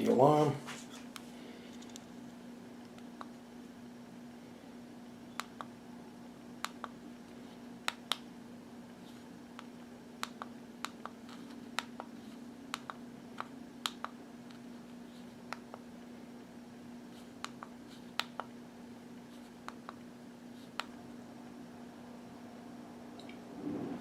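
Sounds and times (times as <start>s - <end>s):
steady low hum: 0.0s - 24.0s
pager buttons clicking: 5.3s - 5.7s.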